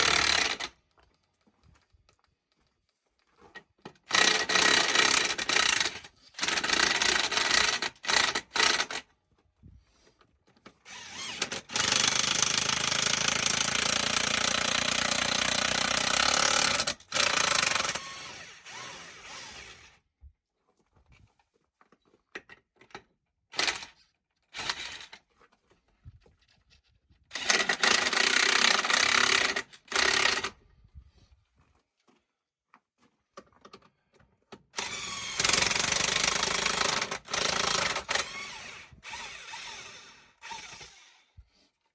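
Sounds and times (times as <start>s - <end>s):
power tool running in bursts: 10.9s - 20.0s.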